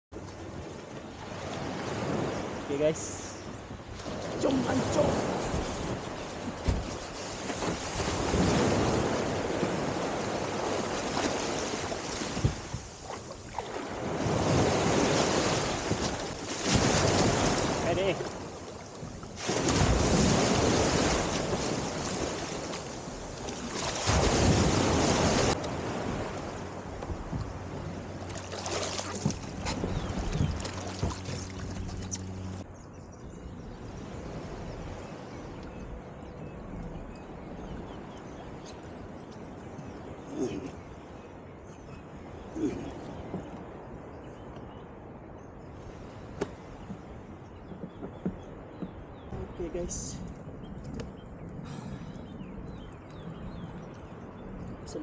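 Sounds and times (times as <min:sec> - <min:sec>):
sea water sloshing: 0:00.2 - 0:32.7
wind buffeting microphone: 0:00.2 - 0:55.0
steady low hum: 0:29.4 - 0:37.8.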